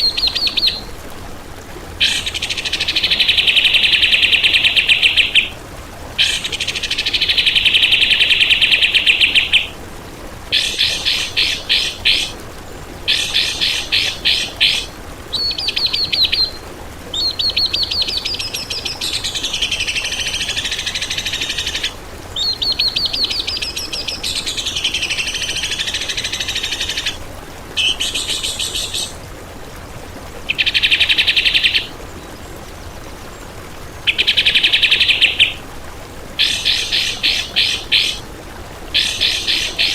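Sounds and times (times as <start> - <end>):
recorded songbird trills: 0.0 - 0.9, 2.0 - 5.6, 6.2 - 9.8, 10.5 - 12.3, 13.1 - 27.2, 27.8 - 29.2, 30.5 - 31.9, 34.0 - 35.6, 36.4 - 38.2, 39.0 - 39.9.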